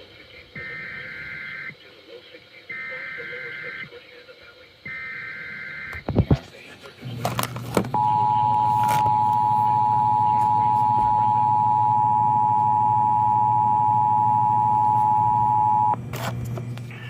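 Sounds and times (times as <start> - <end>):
low steady hum: 4.7 - 17.0
two-note alarm tone: 8.0 - 16.0.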